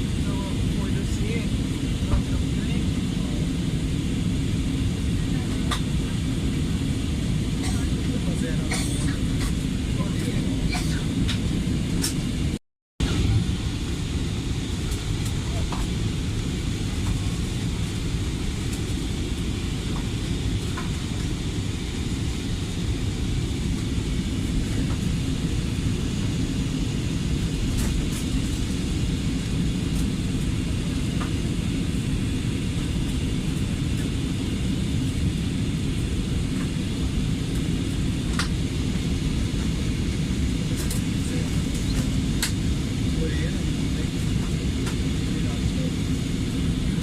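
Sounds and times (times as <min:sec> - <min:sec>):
aircraft cabin engine rumble: 0:00.0 - 0:47.0.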